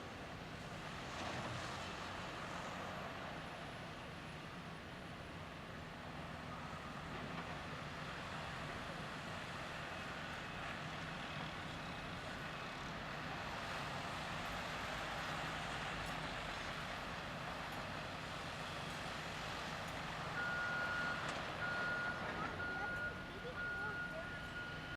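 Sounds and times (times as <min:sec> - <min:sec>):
diesel engines running: 0:00.0 - 0:24.9
back-up alarm tone: 0:20.4 - 0:24.9.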